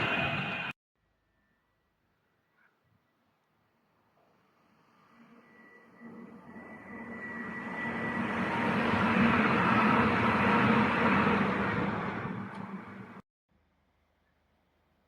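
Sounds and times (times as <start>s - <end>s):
train passing on rails: 0.0s - 0.7s, 4.6s - 13.2s.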